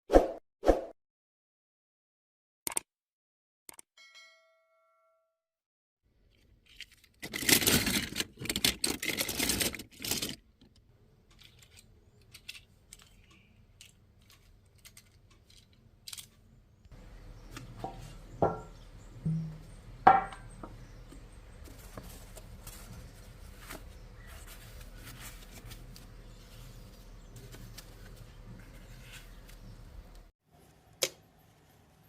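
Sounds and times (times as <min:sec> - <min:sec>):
ringing chime: 0:04.0 - 0:05.4
crinkling handling noise: 0:06.2 - 0:18.2, 0:21.0 - 0:30.3.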